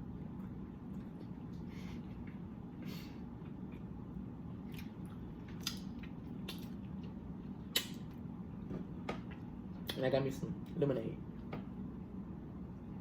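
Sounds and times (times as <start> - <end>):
steady low hum: 0.0 - 13.0
chewing food: 3.4 - 8.2
wet smacking clicks: 7.7 - 8.1.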